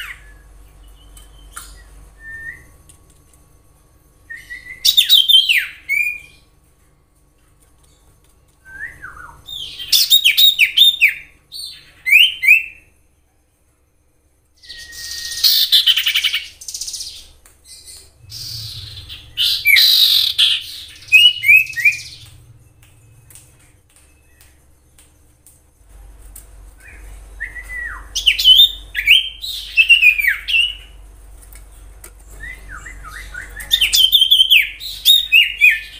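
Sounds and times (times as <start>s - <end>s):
bird whistling sharp notes: 14.6s - 16.5s, 18.3s - 22.3s.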